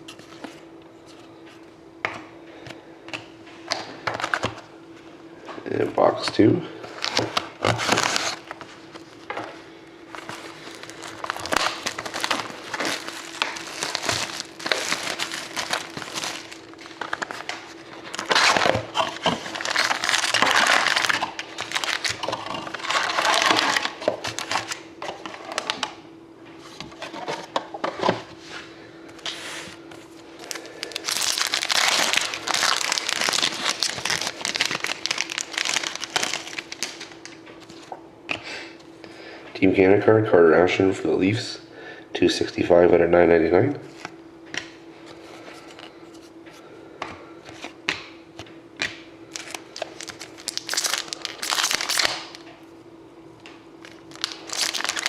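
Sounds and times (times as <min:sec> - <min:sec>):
plastic wrapping crinkling and tearing: 0:06.9 - 0:09.3, 0:10.1 - 0:25.9, 0:30.3 - 0:37.9, 0:49.3 - 0:52.5, 0:53.8 - 0:55.0.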